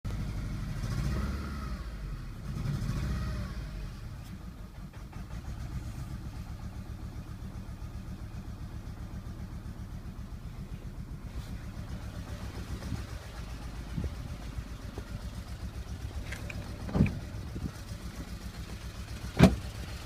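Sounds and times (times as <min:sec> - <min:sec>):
misfiring car engine idling: 0:04.4 - 0:20.0.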